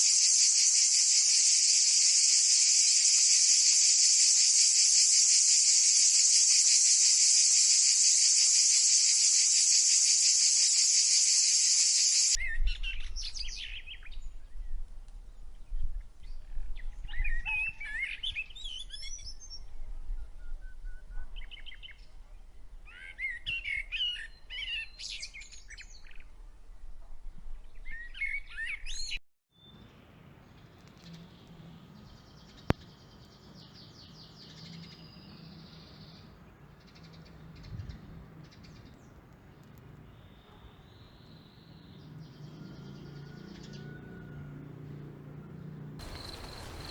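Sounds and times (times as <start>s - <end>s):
high-pitched insect drone: 0.0s - 12.4s, 46.0s - 46.9s
birds chirping: 45.5s - 46.9s.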